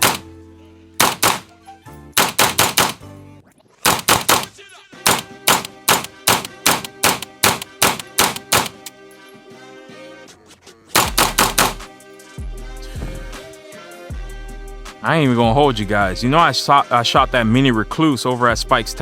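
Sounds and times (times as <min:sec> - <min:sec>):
rifle shots: 0:00.0 - 0:00.3, 0:01.0 - 0:01.5, 0:02.2 - 0:03.0, 0:03.9 - 0:08.9, 0:11.0 - 0:11.8
background music: 0:00.0 - 0:19.0.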